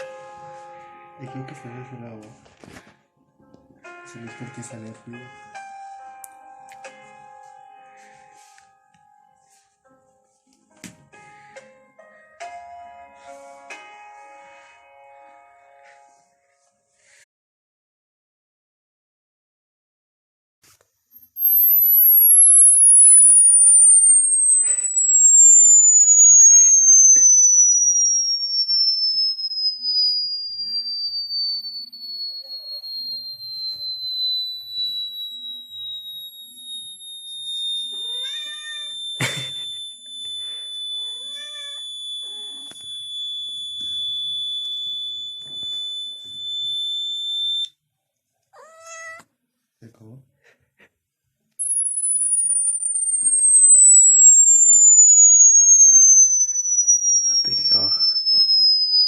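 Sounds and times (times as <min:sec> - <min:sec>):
electronic tone gliding downward: 0:21.3 - 0:47.7, 0:51.6 - 0:59.0
cat meowing: 0:37.9 - 0:39.0, 0:41.0 - 0:42.8, 0:48.5 - 0:49.3.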